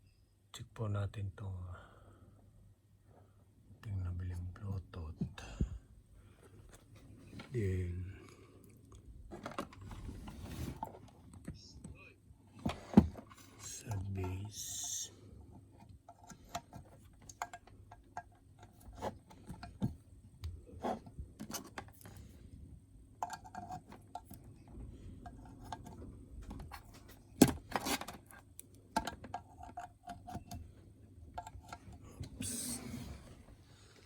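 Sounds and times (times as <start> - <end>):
hard objects clicking and rattling: 15.8 - 20.0, 23.2 - 24.6, 25.2 - 32.0.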